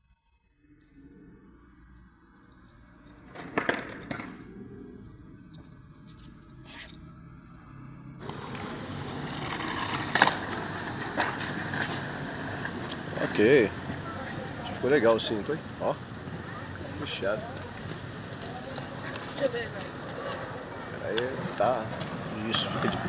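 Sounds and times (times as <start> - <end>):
skateboard wheels rolling on pavement: 3.2 - 4.8, 8.2 - 23.0
skateboard clacks: 3.3 - 4.6, 8.2 - 23.0.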